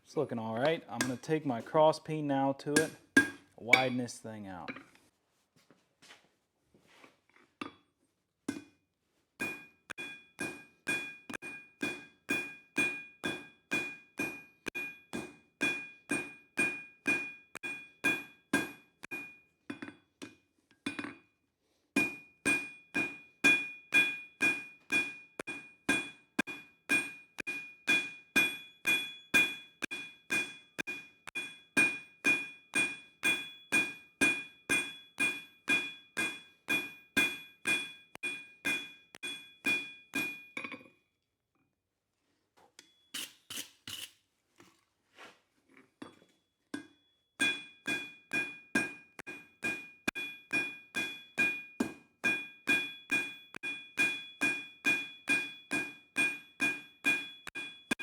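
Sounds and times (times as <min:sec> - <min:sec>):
hammer ringing on hot steel: 0:00.6 - 0:01.4, 0:02.8 - 0:04.1, 0:09.4 - 0:19.4, 0:22.0 - 0:40.6, 0:46.8 - 0:58.0.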